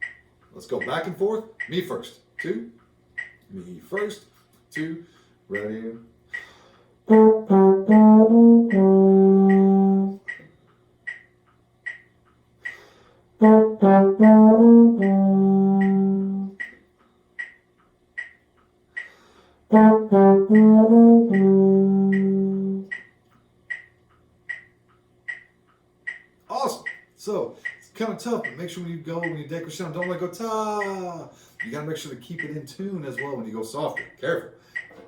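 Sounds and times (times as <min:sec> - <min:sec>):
metronome clicking: 0:00.0 - 0:35.0
wind instrument playing notes: 0:07.1 - 0:10.3, 0:13.4 - 0:16.6, 0:19.7 - 0:22.9.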